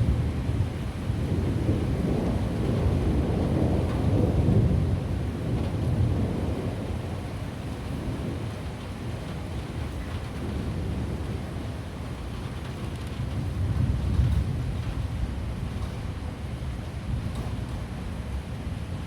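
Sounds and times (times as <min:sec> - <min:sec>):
rolling thunder rumbling: 0:00.0 - 0:08.6
steady rain: 0:00.0 - 0:19.0.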